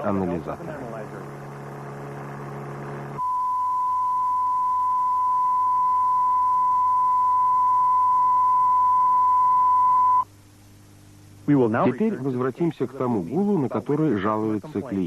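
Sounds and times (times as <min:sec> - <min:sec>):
low buzzing tone: 0:00.0 - 0:13.5
pure test tone: 0:00.8 - 0:10.3.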